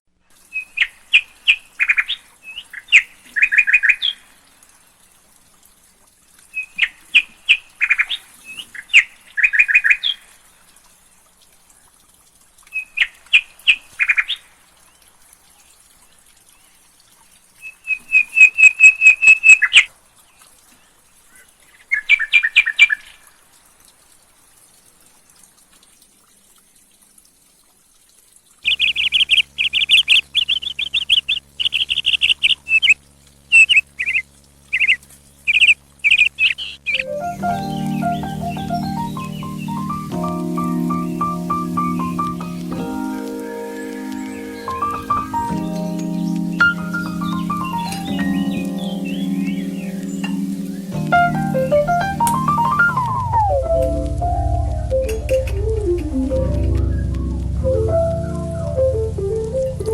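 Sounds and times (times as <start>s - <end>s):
songbird chirping: 34.8s - 59.9s.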